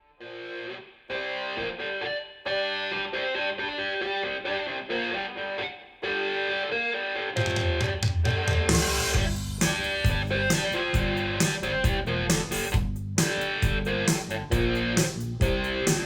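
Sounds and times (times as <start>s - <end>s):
drums and cymbals: 7.4s - 16.0s.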